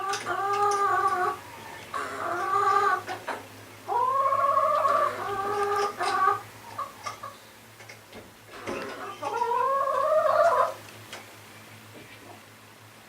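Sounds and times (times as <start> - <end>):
chickens whining calls: 0.0 - 7.7, 8.5 - 10.8.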